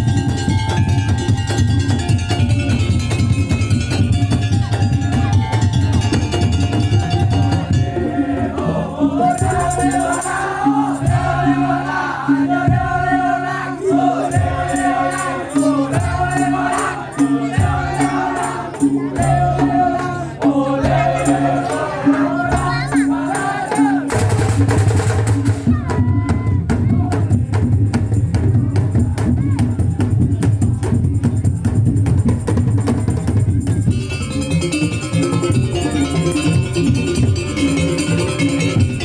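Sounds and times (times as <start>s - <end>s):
drums and slit drums beating: 0.0s - 39.0s
wavering melody line: 33.9s - 39.0s.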